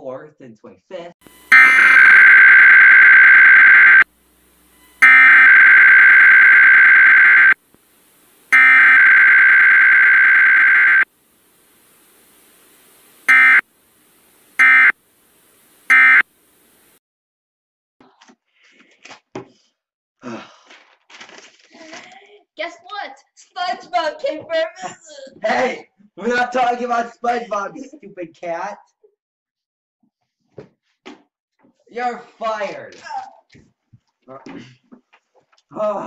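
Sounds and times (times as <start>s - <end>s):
digital data tone bursts: 1.3s - 4.1s, 4.8s - 7.6s, 8.5s - 11.1s, 13.2s - 13.7s, 14.6s - 15.0s, 15.9s - 16.2s.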